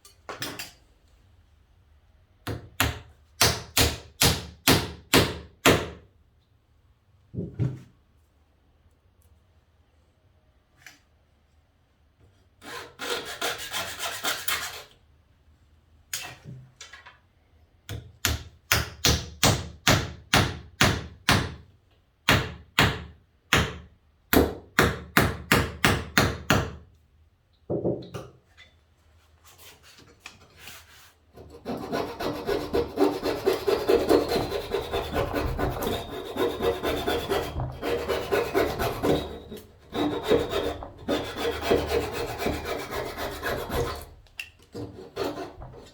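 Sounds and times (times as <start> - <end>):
hand tool rasping on wood: 31.4 - 44.1, 44.8 - 45.9.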